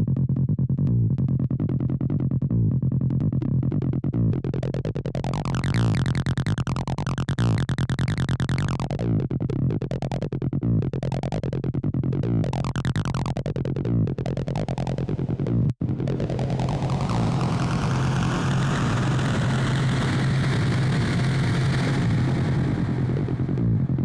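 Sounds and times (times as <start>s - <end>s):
steady low beat: 0.0s - 20.6s
acid electronic music: 3.6s - 24.0s
repeating synthesizer line: 5.2s - 9.0s, 12.3s - 19.5s.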